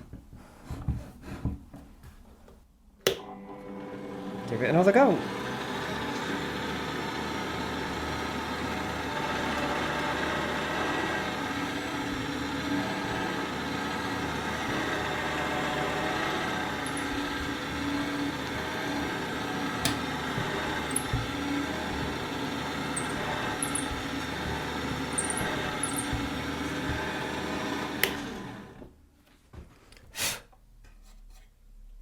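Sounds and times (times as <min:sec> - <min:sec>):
pillar drill motor humming: 0:05.2 - 0:28.9.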